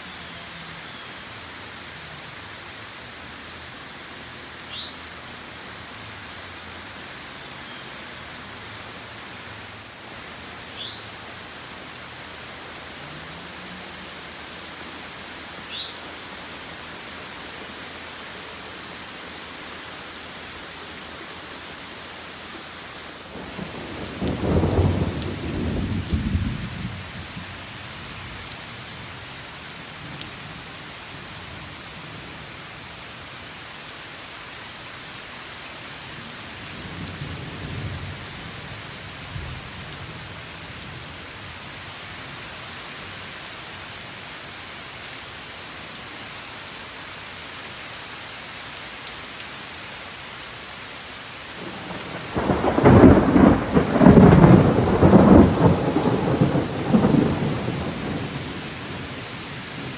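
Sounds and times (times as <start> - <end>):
steady rain falling: 0.0 - 59.9
thunder rumbling: 23.3 - 27.6, 51.6 - 59.9.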